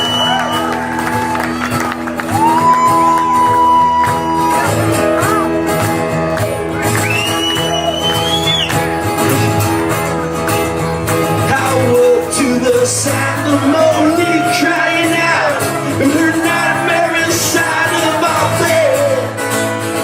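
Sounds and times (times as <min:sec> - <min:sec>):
blues harmonica: 0:07.0 - 0:11.0
bass and drum groove: 0:08.7 - 0:11.7.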